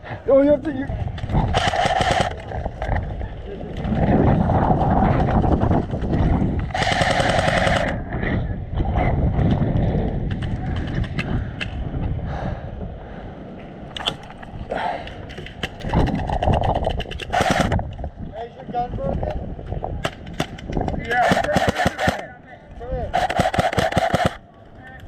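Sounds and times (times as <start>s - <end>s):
heavy low rumble: 0.0s - 21.2s
rapid full-auto gunfire: 1.4s - 2.4s, 6.7s - 8.0s, 17.2s - 17.8s, 20.4s - 22.3s, 23.1s - 24.4s
airsoft gun single shots: 23.2s - 24.4s.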